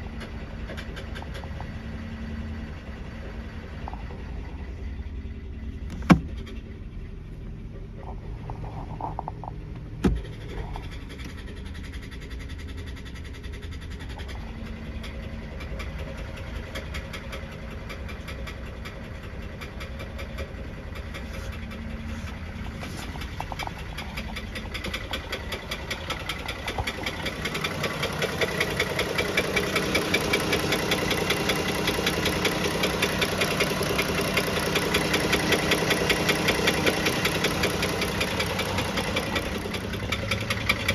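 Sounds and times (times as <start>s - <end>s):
car engine running: 0.0s - 40.9s
engine knocking: 0.0s - 40.9s
thump: 5.9s - 6.4s, 10.0s - 10.4s.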